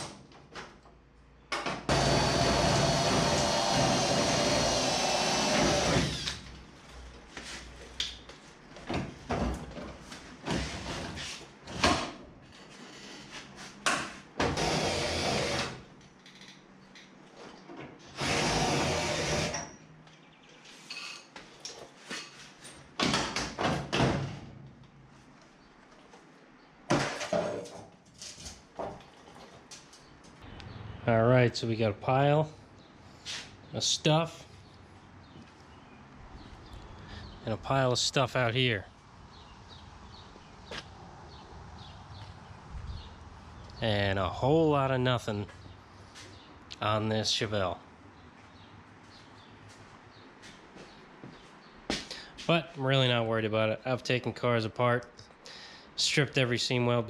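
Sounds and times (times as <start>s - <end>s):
handheld power tool running: 1.9s - 6.4s, 14.5s - 15.8s, 18.2s - 19.7s.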